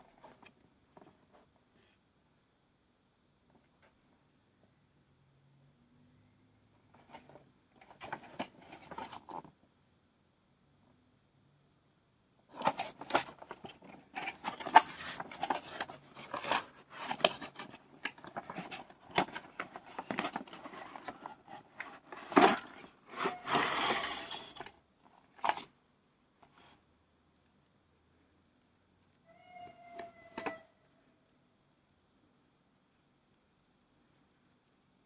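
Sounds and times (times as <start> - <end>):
packaging crinkling and scraping: 7.0 - 9.5, 12.5 - 25.8, 26.4 - 26.8
packaging tearing: 12.5 - 25.7.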